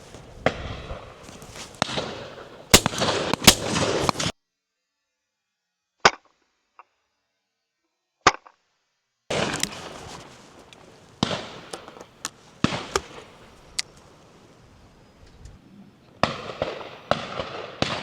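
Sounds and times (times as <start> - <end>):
distant shotgun shots: 0.0 - 4.3, 9.3 - 13.6, 16.2 - 18.0
outdoor background noise: 0.0 - 4.3, 9.3 - 18.0
shotgun shots: 1.6 - 4.3, 9.3 - 10.0, 11.2 - 13.4, 16.2 - 18.0.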